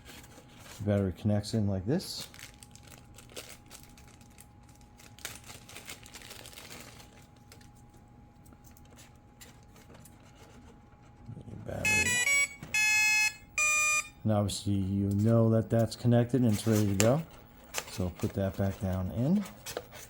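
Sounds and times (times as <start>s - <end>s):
electronic beeps stepping in pitch: 11.8s - 14.1s.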